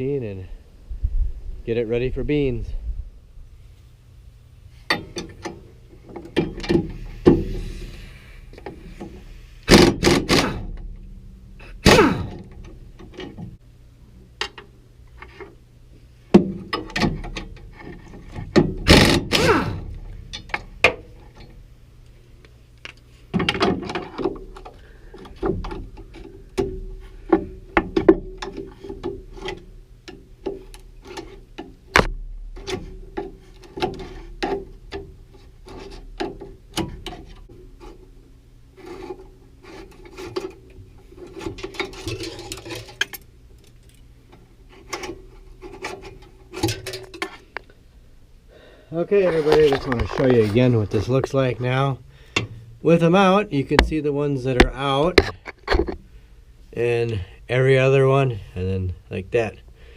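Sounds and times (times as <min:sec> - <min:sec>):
faint low hum: 0:00.0 - 0:59.9
metal clanks and rattles: 0:04.8 - 0:13.6, 0:16.3 - 0:21.7, 0:23.3 - 0:38.1, 0:38.8 - 0:47.6
loud metal bangs: 0:09.7 - 0:12.6, 0:18.4 - 0:21.2.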